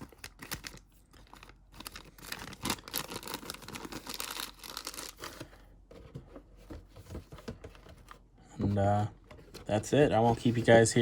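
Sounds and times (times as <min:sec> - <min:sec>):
plastic bag crinkling: 0:00.1 - 0:05.4.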